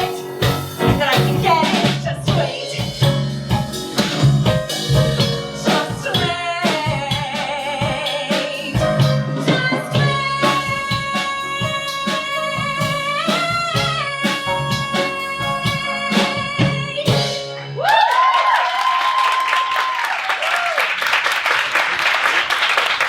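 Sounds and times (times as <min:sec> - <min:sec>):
band playing bass and drums: 0:00.0 - 0:17.6
audience whooping and applauding: 0:17.8 - 0:23.0.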